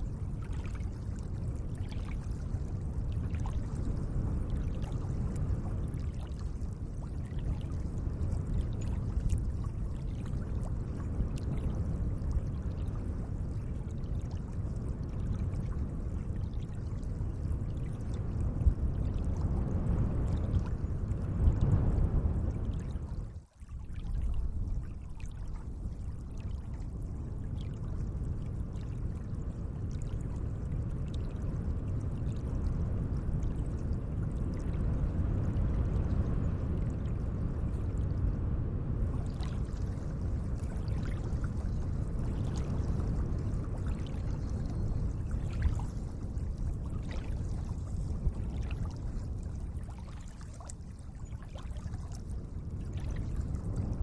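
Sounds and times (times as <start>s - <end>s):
water splashes and drips: 0.0s - 15.8s, 16.4s - 28.0s, 39.1s - 53.9s
gentle lake water washing: 0.0s - 38.1s, 39.0s - 54.0s.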